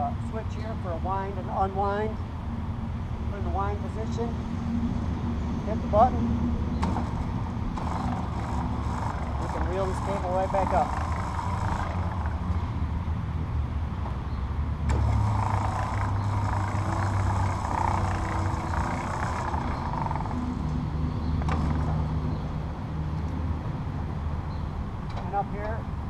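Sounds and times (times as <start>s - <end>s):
electric motor humming: 6.6s - 13.3s, 14.8s - 22.5s.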